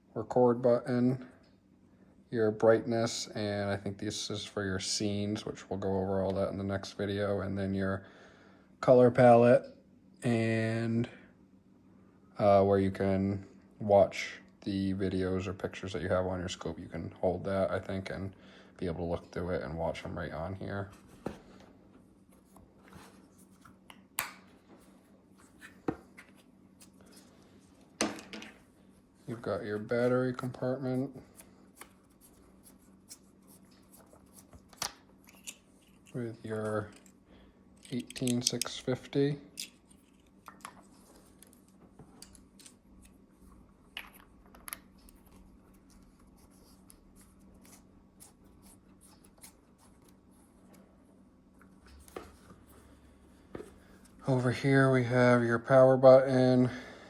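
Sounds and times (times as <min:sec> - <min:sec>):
faint steady hum: 0:00.0 - 0:57.0
scope handling clicks and rubs: 0:31.8 - 0:37.2, 0:37.8 - 0:38.9, 0:39.5 - 0:43.2.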